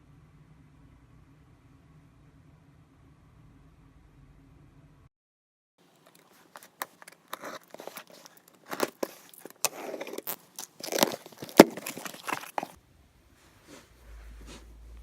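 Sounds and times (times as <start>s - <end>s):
rustling and crinkling: 5.8s - 12.8s.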